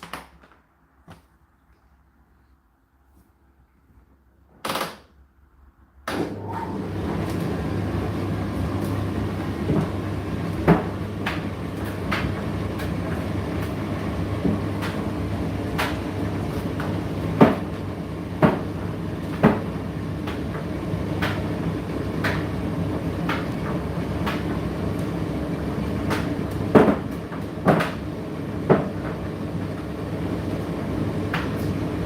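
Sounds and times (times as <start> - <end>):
tumble dryer motor hum: 6.2 - 32.0.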